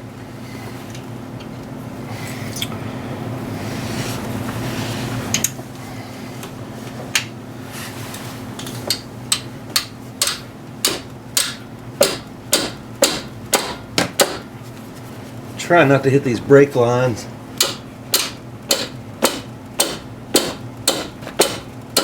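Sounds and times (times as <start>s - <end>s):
steady low hum: 0.0s - 22.0s
hammer striking metal wrench: 8.9s - 14.4s, 17.6s - 22.0s.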